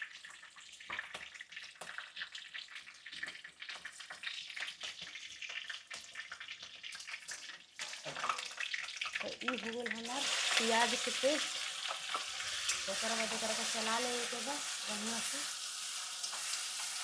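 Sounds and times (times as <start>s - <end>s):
small pops and crackles: 0.0s - 9.8s
spices sizzling in hot oil: 0.0s - 17.0s.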